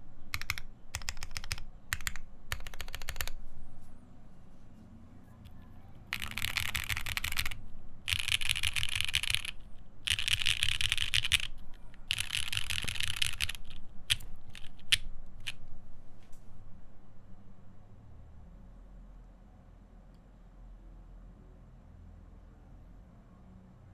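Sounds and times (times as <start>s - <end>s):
mechanical keyboard typing: 0.0s - 3.4s, 5.5s - 15.7s.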